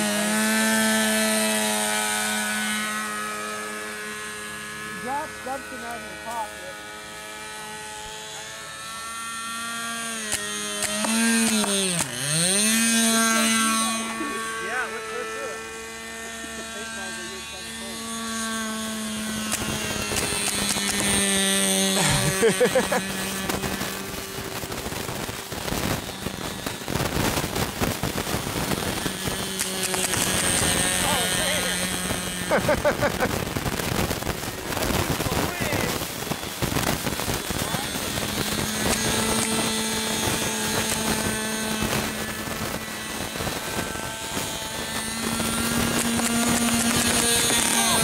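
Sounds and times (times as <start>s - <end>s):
small electric motor and propeller humming: 0.0s - 48.0s
sharp clicks: 10.2s - 12.2s, 19.4s - 21.4s, 27.9s - 30.9s, 38.2s - 42.2s, 43.8s - 48.0s
rapid crackle of pops: 10.2s - 12.7s, 19.3s - 48.0s.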